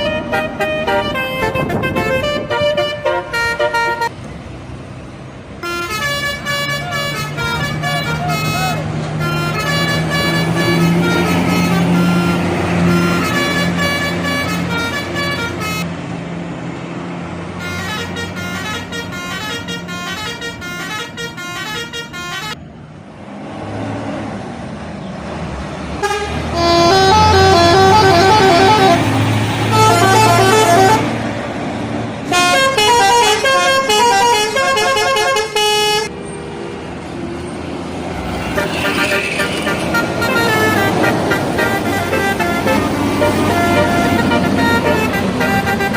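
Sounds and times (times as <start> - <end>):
bus horns playing quick tunes: 0.0 - 4.1, 5.6 - 15.9, 17.6 - 22.6, 26.0 - 31.2, 32.3 - 36.1, 38.4 - 45.9
bus engine rumble: 0.0 - 45.9.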